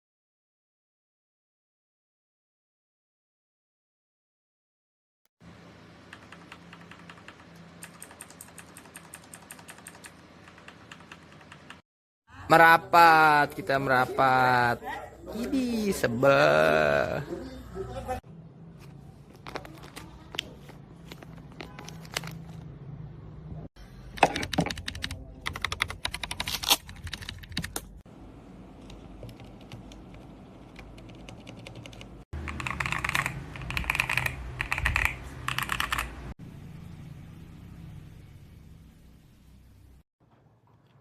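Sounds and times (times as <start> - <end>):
mechanical keyboard typing: 6.1 - 11.8, 24.2 - 27.9, 28.8 - 36.2.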